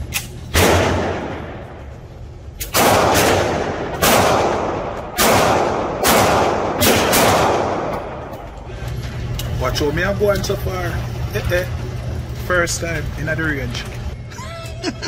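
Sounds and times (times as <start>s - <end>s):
gunshots echoing: 0.5s - 1.7s, 2.6s - 8.3s.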